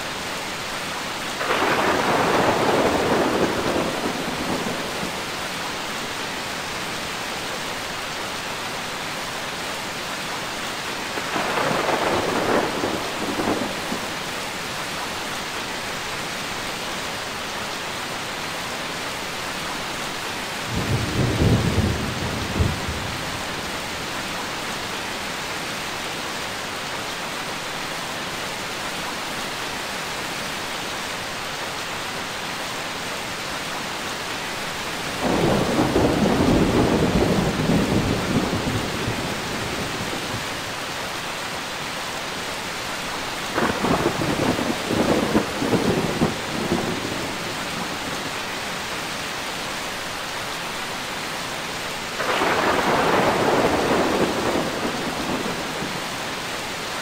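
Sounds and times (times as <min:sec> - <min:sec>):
steady rain falling: 0:00.0 - 0:57.0
thunder rumbling: 0:01.4 - 0:05.2, 0:11.2 - 0:14.1, 0:35.2 - 0:40.5, 0:43.5 - 0:48.1, 0:52.2 - 0:56.1.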